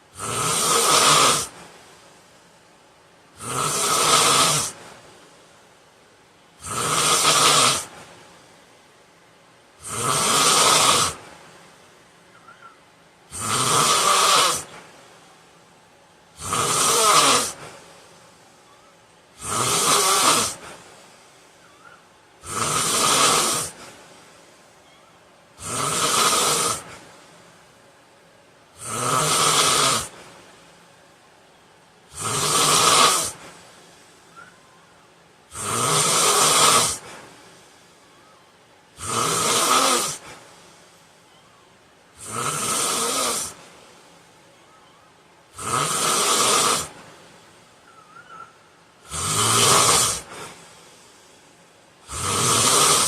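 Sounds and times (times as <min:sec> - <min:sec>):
man snoring loudly: 0:00.1 - 0:01.6, 0:03.4 - 0:04.8, 0:06.6 - 0:07.9, 0:09.8 - 0:11.2, 0:13.3 - 0:14.7, 0:16.4 - 0:17.6, 0:19.4 - 0:20.6, 0:22.4 - 0:23.8, 0:25.6 - 0:26.9, 0:28.8 - 0:30.1, 0:32.1 - 0:33.4, 0:35.5 - 0:37.1, 0:39.0 - 0:40.2, 0:42.2 - 0:43.6, 0:45.5 - 0:47.0, 0:49.0 - 0:50.4, 0:52.0 - 0:53.0.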